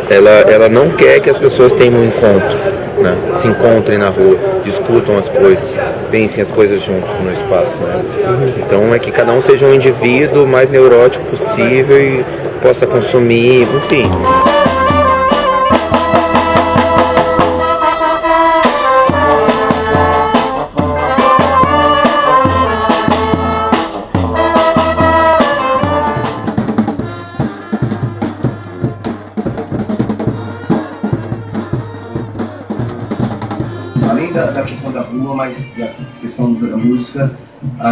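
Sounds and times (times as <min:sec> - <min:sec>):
brass band playing: 0:13.0 - 0:37.6
snare and bass drum: 0:13.6 - 0:17.7, 0:19.1 - 0:36.7.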